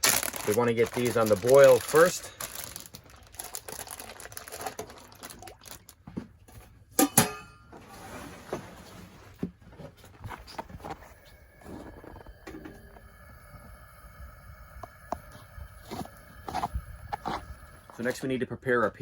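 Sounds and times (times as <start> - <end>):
metallic pot clanks: 7.0 - 7.7.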